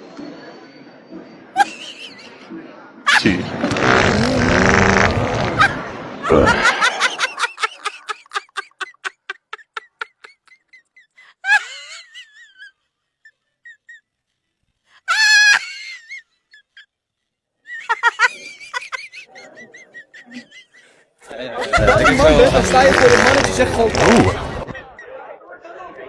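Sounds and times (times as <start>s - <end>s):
rapid laughter: 1.6s - 2.5s, 3.1s - 14.1s, 15.1s - 16.9s, 17.7s - 25.2s
fake fart sound effect: 3.2s - 7.0s, 21.7s - 24.9s.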